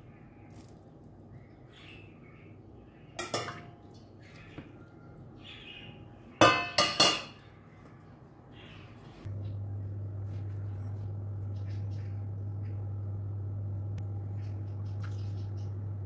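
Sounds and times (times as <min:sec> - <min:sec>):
faint bird chirps: 0:00.0 - 0:03.2
dishes clinking: 0:03.2 - 0:03.7, 0:06.4 - 0:07.4.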